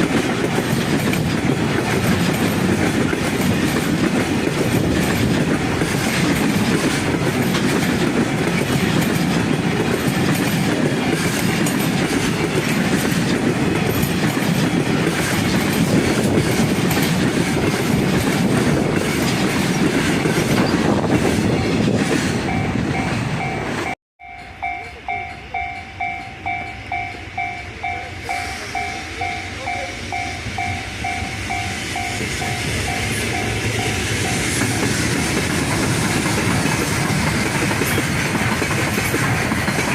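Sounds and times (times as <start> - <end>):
wheels clattering over rail joints: 0.0 - 22.6, 34.6 - 39.9
freight train running past: 0.0 - 39.9
level crossing warning bell: 22.4 - 34.4.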